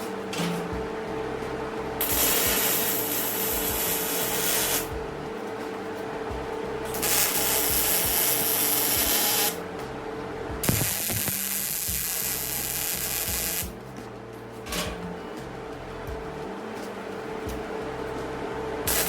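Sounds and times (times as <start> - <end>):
steady hum: 0.0 - 19.0
power tool grinding metal: 2.0 - 5.0, 6.9 - 9.6.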